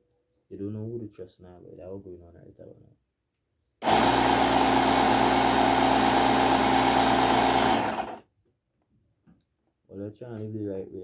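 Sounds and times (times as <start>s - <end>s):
air compressor motor running: 3.8s - 8.2s.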